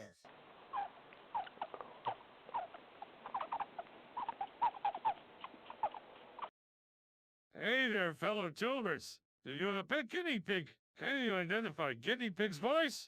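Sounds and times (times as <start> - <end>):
gerbil squeaking: 0.7 - 6.5.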